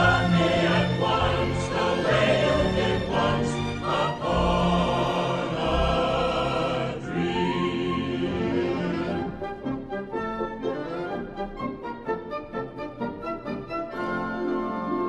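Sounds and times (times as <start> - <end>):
choir singing: 0.0 - 10.0
orchestra playing: 0.0 - 15.0.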